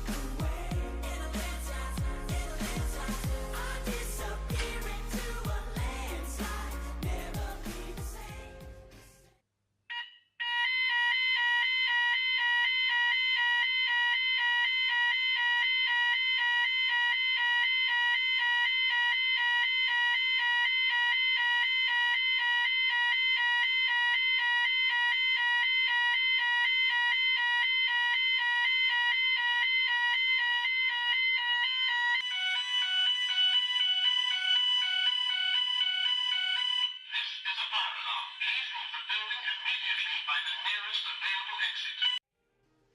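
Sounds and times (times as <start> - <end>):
background pop music: 0.0 - 9.3
two-pitch fire alarm tone: 9.9 - 37.1.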